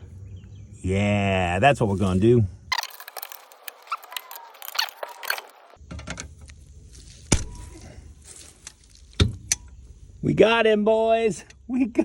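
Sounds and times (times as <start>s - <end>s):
sharp crack: 7.3s - 7.8s.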